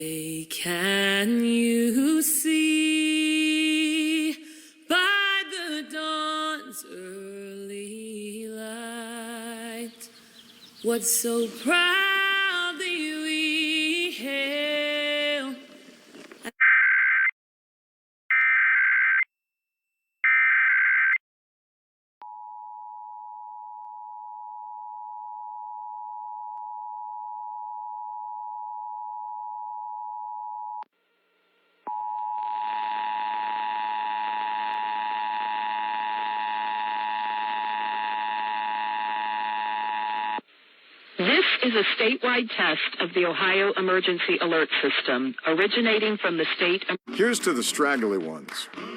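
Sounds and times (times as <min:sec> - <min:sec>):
buzzy noise under tones: 0:32.6 - 0:43.9.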